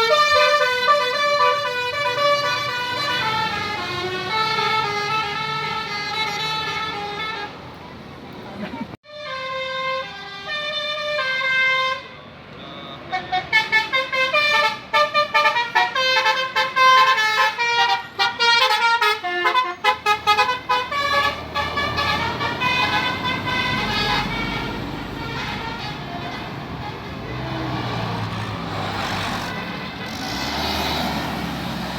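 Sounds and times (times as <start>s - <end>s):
multi-tone bus horn melody: 0.0s - 7.8s, 9.0s - 31.5s.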